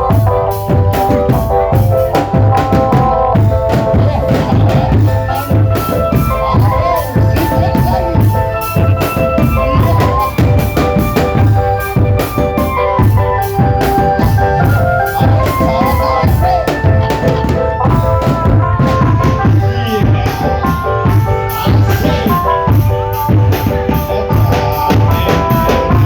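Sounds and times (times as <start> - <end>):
drumband music: 0.0 - 26.0
melody of held notes: 0.0 - 26.0
snare and bass drums beating: 0.0 - 26.0.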